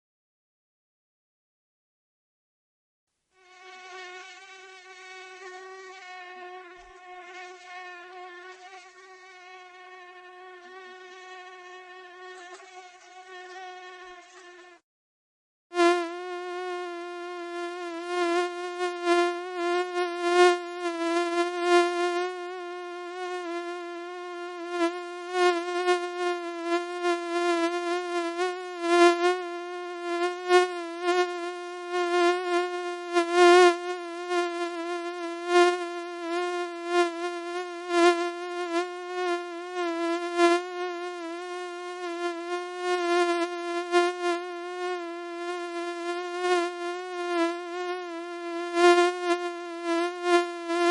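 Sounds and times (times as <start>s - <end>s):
mosquito buzzing: 3.3s - 14.8s, 15.7s - 50.9s.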